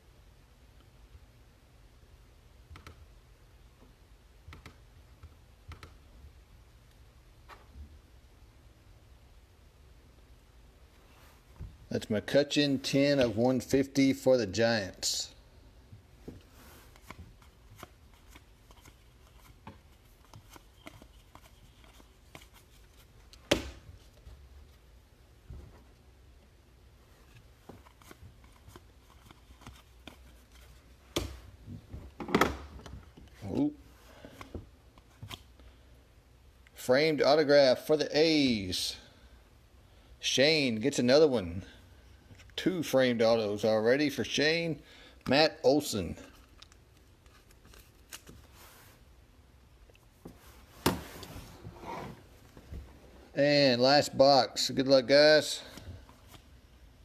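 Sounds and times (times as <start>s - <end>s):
cards being flipped by hand: 16.8s - 24.2s, 27.2s - 31.4s, 46.3s - 48.8s
cards clicking: 17.0s - 22.7s.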